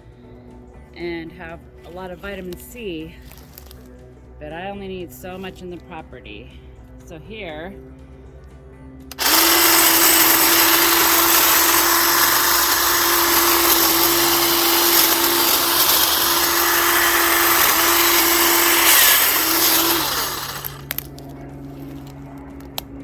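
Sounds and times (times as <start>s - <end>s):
hedge trimmer cutting brush: 9.1s - 21.2s.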